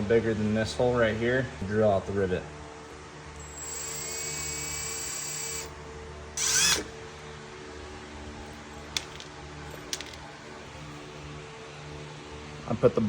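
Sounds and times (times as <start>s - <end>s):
power drill whining: 3.4s - 5.7s, 6.4s - 7.0s.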